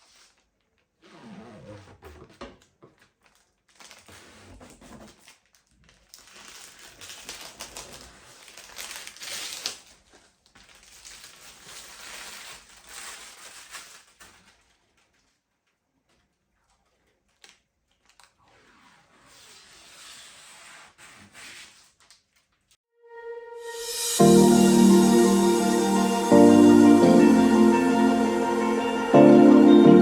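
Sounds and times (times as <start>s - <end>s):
packaging crinkling and rustling: 2.3s - 18.4s.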